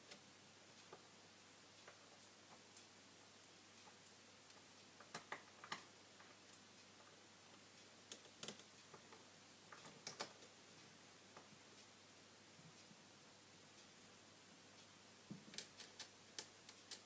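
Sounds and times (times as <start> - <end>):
small tools clicking and tapping: 15.3 - 17.0.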